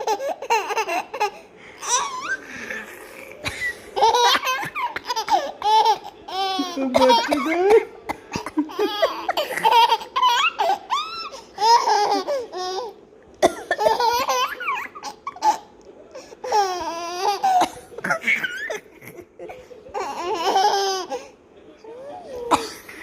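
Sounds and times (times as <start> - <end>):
baby giggling: 0.0 - 7.8, 8.4 - 13.0, 13.7 - 15.7, 16.4 - 21.2
adult coughing: 6.8 - 9.7, 22.5 - 23.0.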